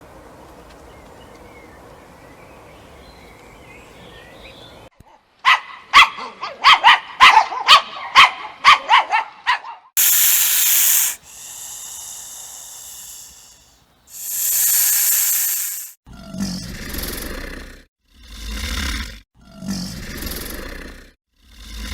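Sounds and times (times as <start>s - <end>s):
dog barking: 5.1s - 9.9s
loud hisses: 10.0s - 16.0s.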